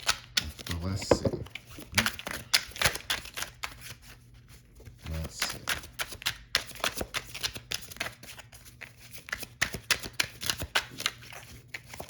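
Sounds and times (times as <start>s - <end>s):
cards being shuffled: 0.0s - 12.0s.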